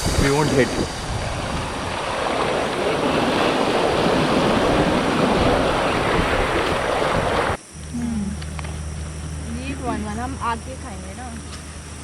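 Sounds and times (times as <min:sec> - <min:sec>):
wind buffeting microphone: 0:00.0 - 0:07.6
river water rushing: 0:01.2 - 0:07.6.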